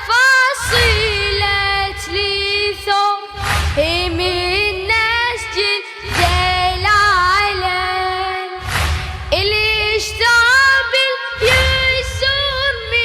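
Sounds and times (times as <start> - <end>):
deep pulsing beat: 0.6 - 2.8, 3.4 - 13.0
boy singing lament: 9.3 - 13.0.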